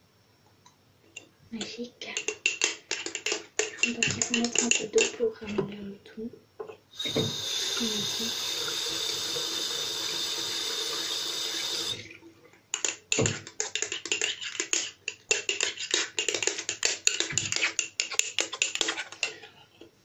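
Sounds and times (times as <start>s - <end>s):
water running from a tap: 7.0s - 12.2s.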